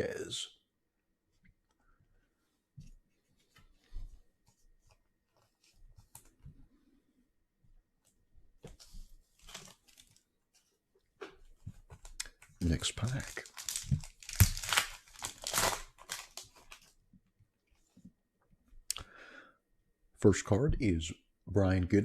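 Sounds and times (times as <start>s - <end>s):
foil wrapper crinkling and tearing: 9.4s - 10.2s, 12.6s - 16.9s.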